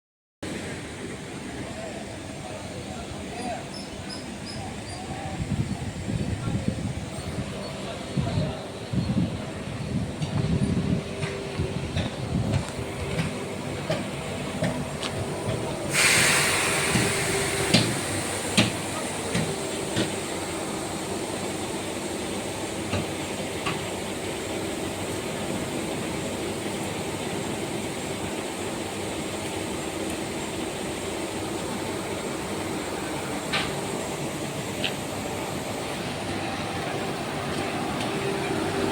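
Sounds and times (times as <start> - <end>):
air compressor humming: 9.8 - 22.9
loud hiss of air: 12.7 - 38.9.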